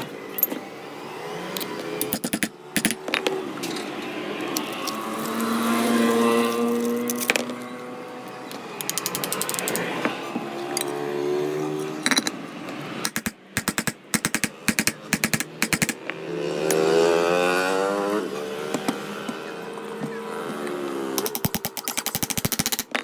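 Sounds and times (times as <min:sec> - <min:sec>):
rapid mechanical clicking: 0:08.8 - 0:10.0, 0:13.0 - 0:16.1, 0:21.2 - 0:23.0.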